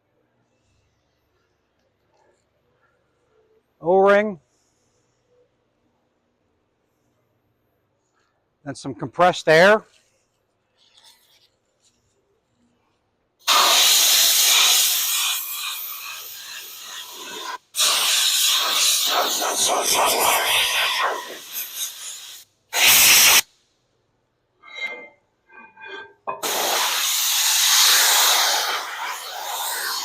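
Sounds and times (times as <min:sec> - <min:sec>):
compressed air hissing: 0:13.4 - 0:23.5, 0:26.4 - 0:30.0.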